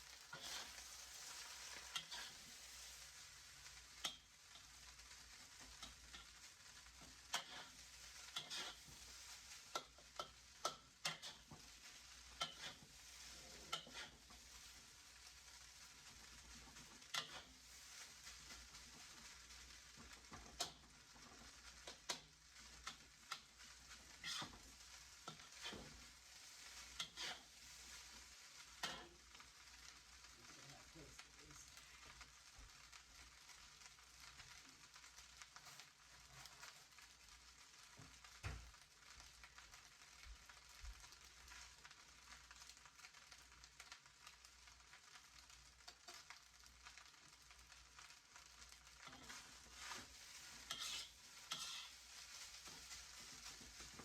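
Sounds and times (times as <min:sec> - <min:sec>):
rice sizzling in a pan: 0:00.0 - 0:54.0
utensil striking a pan: 0:07.3 - 0:11.6, 0:12.3 - 0:12.9, 0:17.1 - 0:17.5, 0:49.0 - 0:52.0.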